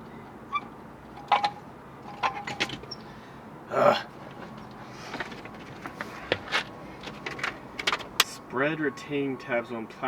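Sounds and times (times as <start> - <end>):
person grunting: 3.7 - 4.1.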